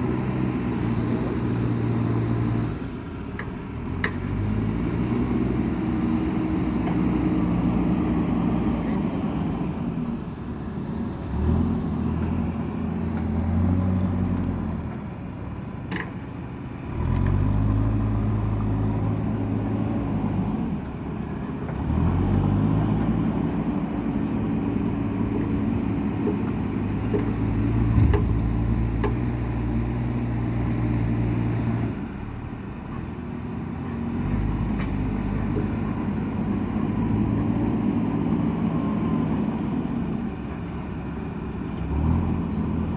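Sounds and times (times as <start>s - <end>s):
diesel engine under load: 0.0s - 42.9s
sharp knocks: 27.9s - 29.2s.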